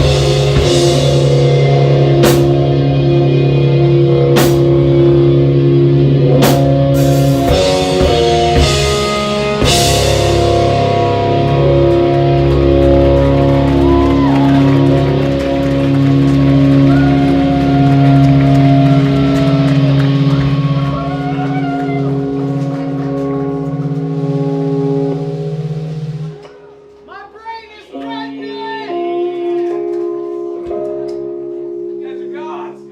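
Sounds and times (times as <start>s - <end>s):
electric guitars sustained chords: 0.0s - 27.1s, 27.9s - 32.9s.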